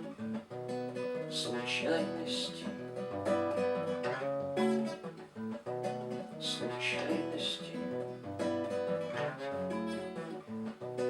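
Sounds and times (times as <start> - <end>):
acoustic guitar chords: 0.0 - 11.0
man singing: 1.3 - 3.0, 6.3 - 8.0.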